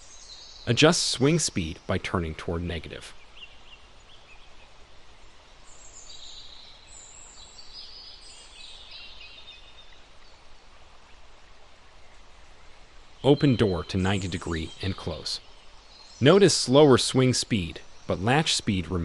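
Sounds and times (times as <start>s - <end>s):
low background noise: 0.0s - 19.0s
bird chirps: 13.2s - 19.0s.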